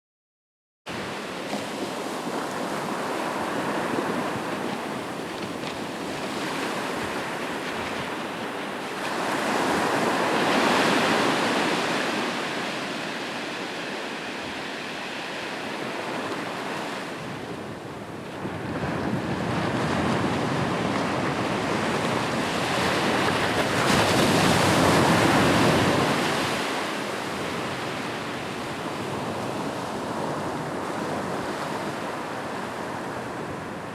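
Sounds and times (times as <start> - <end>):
ocean waves breaking: 0.9 - 33.9.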